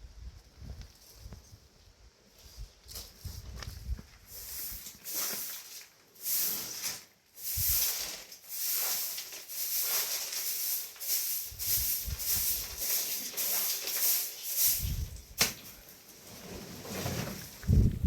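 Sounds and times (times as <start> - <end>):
hissing scraping strokes: 4.3 - 15.1.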